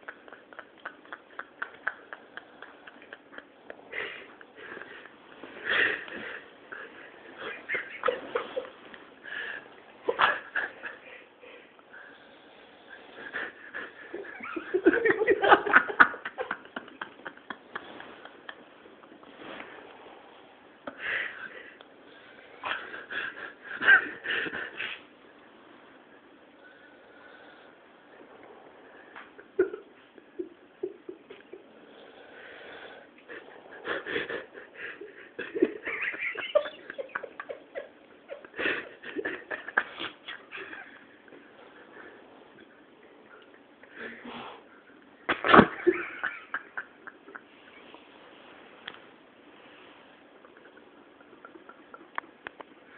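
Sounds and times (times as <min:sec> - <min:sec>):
quiet breath: 0:26.5 - 0:29.4, 0:31.8 - 0:35.4.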